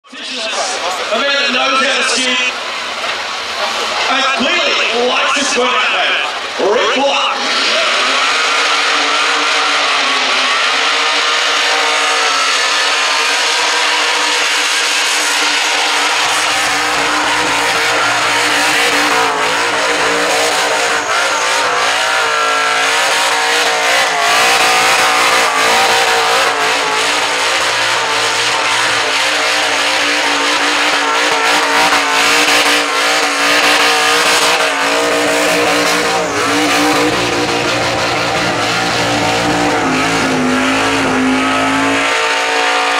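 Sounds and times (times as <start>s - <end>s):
car engine at high revs: 0.0s - 42.9s
tyres squealing: 6.6s - 42.2s.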